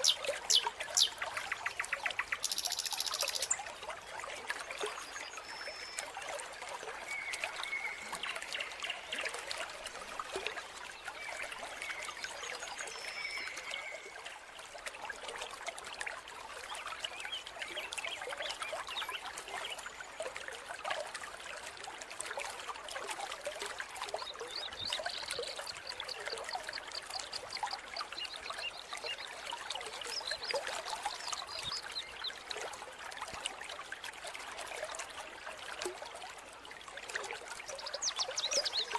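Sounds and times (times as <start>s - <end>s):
stream trickling over rocks: 0.0s - 38.9s.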